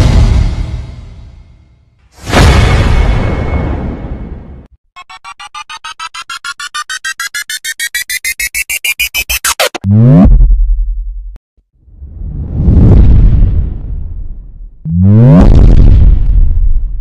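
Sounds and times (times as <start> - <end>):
rising electronic beeps: 5.0 - 11.1
noisy boom: 12.0 - 17.0.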